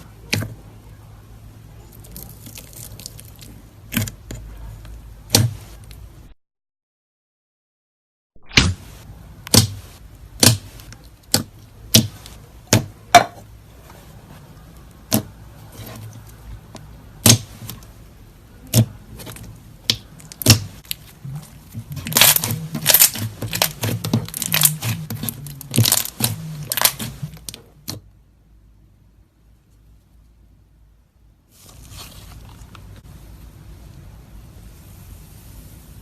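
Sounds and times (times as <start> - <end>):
slime popping and crackling: 2.0 - 4.2, 18.7 - 27.6.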